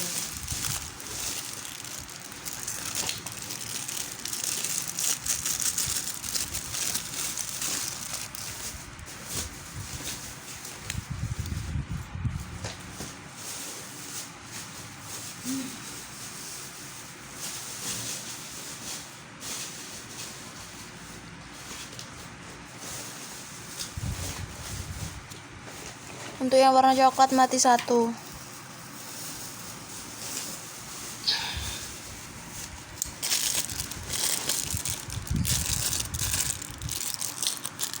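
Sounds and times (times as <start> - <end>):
packaging rustling: 0.0 - 11.7, 31.8 - 38.0.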